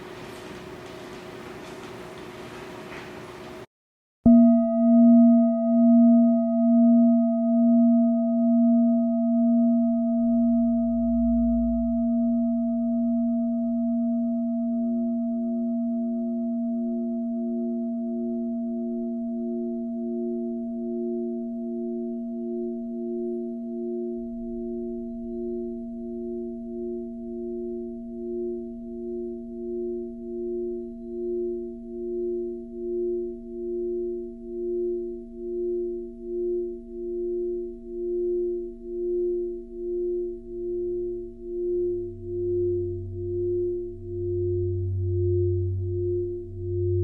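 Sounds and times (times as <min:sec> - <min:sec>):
higher pulsing tone: 0:04.3 - 0:15.3, 0:21.8 - 0:47.0
struck low ringing tone: 0:04.3 - 0:47.0.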